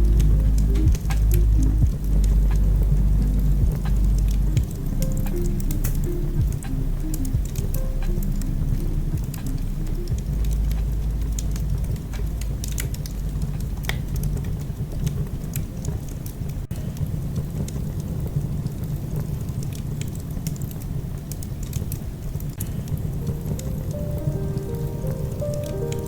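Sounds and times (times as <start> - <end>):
low steady rumble: 0.0 - 26.0
sharp pops and snaps: 0.0 - 26.0
wood fire crackling: 0.0 - 26.0.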